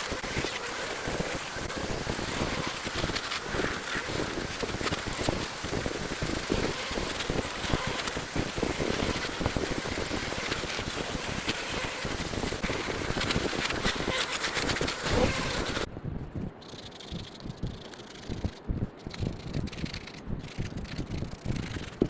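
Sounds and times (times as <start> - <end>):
tool scraping wood: 0.0 - 15.9.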